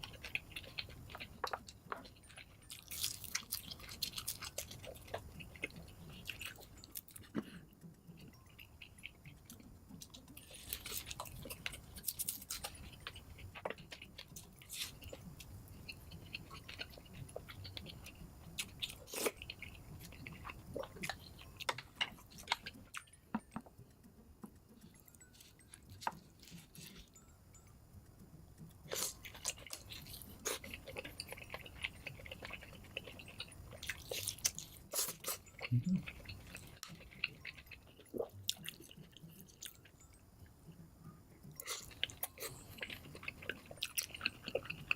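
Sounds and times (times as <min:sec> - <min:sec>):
person chewing and crunching food: 0:00.0 - 0:44.9.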